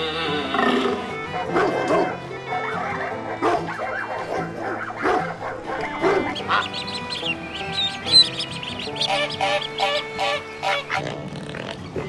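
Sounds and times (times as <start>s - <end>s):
background music: 0.0s - 12.0s
fowl honking: 2.5s - 11.0s.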